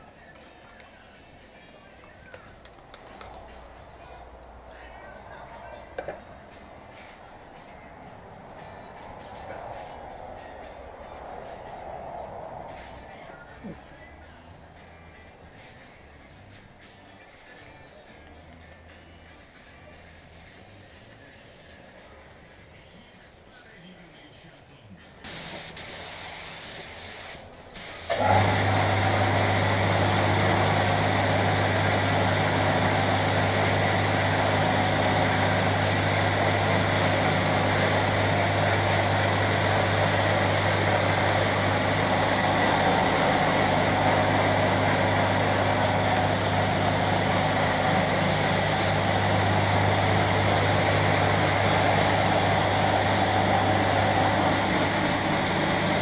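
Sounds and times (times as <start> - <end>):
compressed air hiss: 25.2 - 56.0
air compressor running: 25.3 - 56.0.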